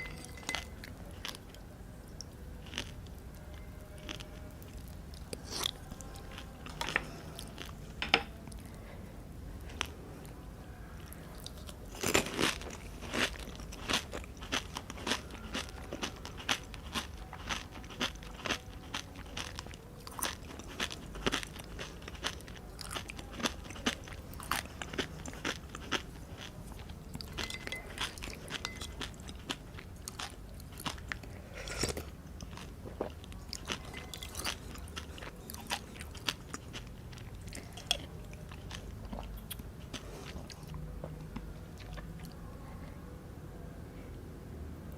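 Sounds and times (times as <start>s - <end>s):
crisp food crunching: 2.6s - 7.7s, 11.4s - 42.4s
wet chewing: 11.4s - 42.4s.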